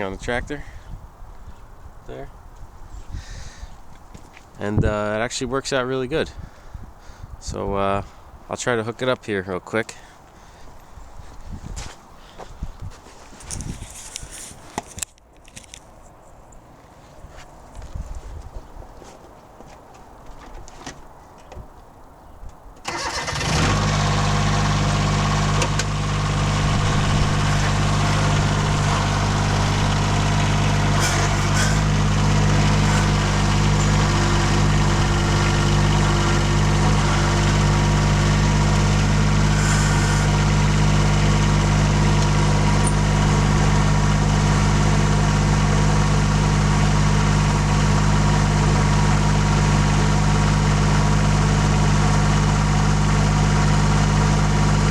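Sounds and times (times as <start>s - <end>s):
tractor engine cranking and idling: 22.6s - 54.9s.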